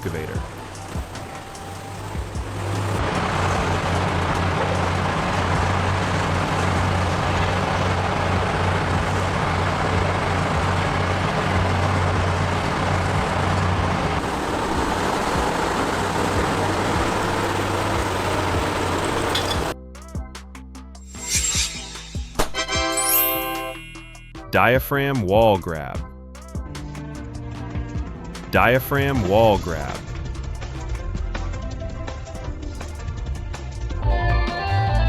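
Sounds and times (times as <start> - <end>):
excavator engine drone: 0.0 - 19.8.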